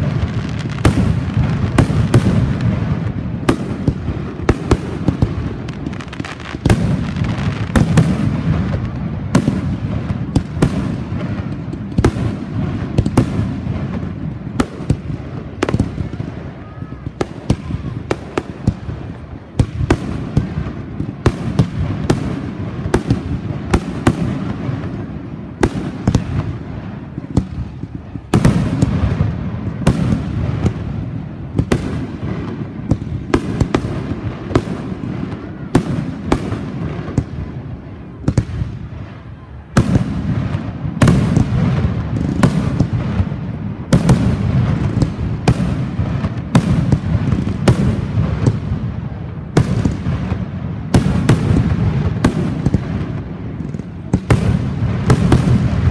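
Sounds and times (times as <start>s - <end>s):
firework bangs: 0.0s - 55.9s
firework crackle: 0.0s - 55.9s.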